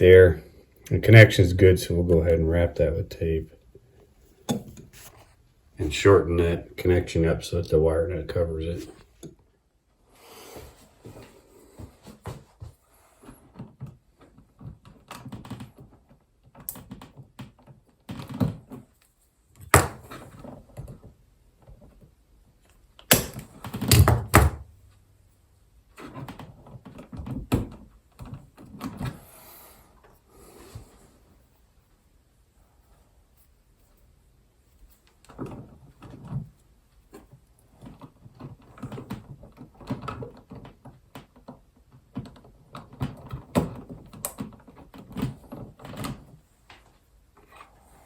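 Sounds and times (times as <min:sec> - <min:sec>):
rustling and small clicks: 0:30.0 - 0:48.0.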